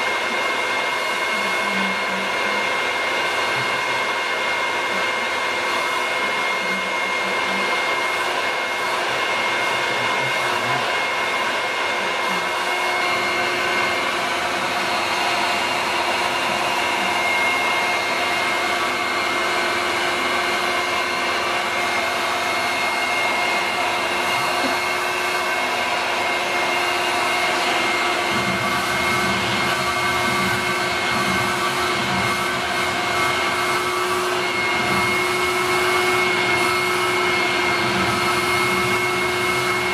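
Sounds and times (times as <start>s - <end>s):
vacuum cleaner running: 0.0s - 39.9s.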